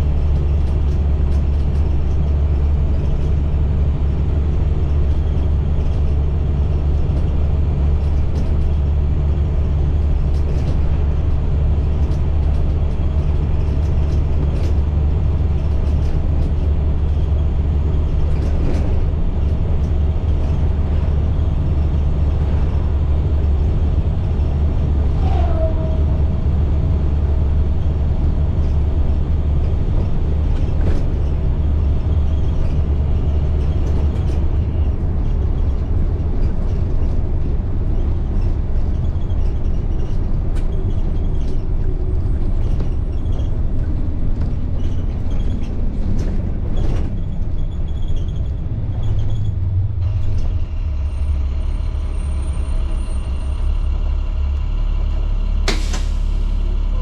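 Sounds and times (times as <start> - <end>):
bus diesel engine drone: 0.0 - 57.0.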